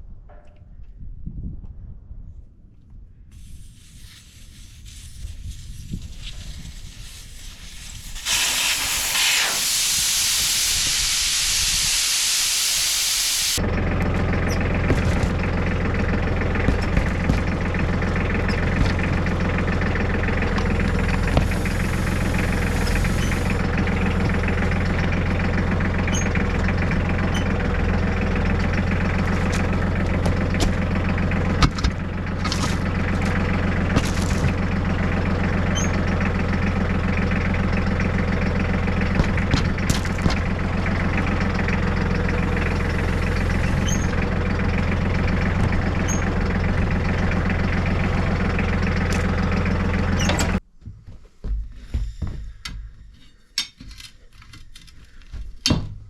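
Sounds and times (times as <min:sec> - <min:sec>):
air hissing: 0:03.3 - 0:13.6, 0:20.9 - 0:23.6, 0:42.1 - 0:44.2
motor running: 0:11.9 - 0:50.6.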